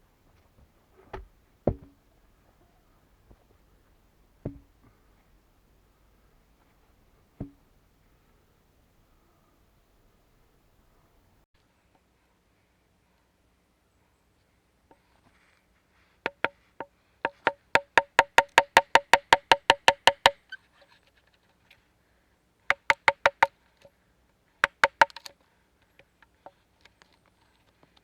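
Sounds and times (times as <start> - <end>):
hammer blows on wood: 4.4 - 5.3, 6.6 - 8.5.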